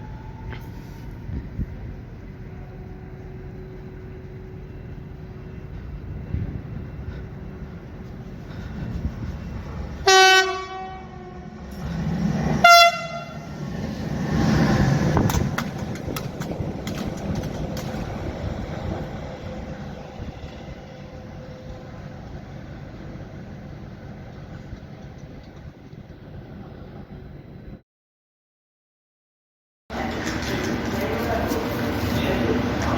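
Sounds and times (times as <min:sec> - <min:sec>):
train rumbling past: 0:00.0 - 0:27.8, 0:29.9 - 0:32.9
train horn blasts: 0:10.0 - 0:11.6, 0:12.6 - 0:13.5
wheels clicking over rails: 0:13.6 - 0:19.9, 0:29.9 - 0:32.9.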